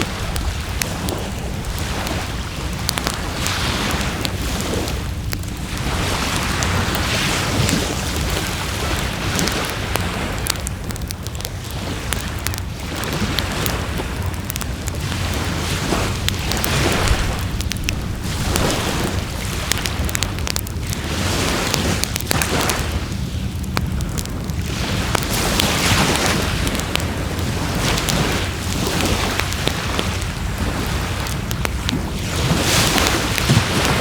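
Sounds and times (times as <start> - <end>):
wood fire crackling and popping: 0.0 - 34.0
low rumble: 13.6 - 21.1.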